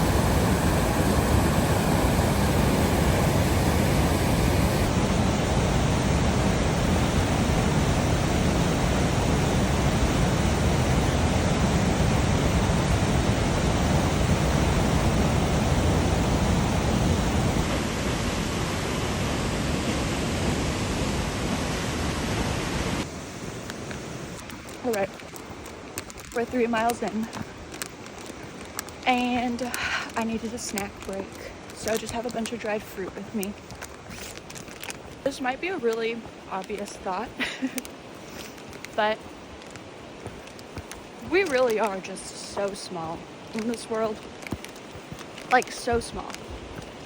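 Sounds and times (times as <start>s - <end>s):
waterfall rushing: 0.0s - 5.9s.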